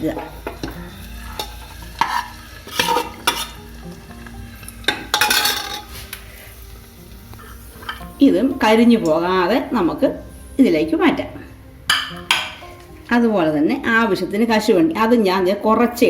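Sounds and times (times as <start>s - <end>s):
spoon scraping metal pot: 0.0s - 6.6s, 7.3s - 9.2s
raisins sizzling in oil: 0.0s - 14.9s
spoon clattering: 0.1s - 3.7s, 4.6s - 6.0s, 7.8s - 8.2s, 11.9s - 12.6s.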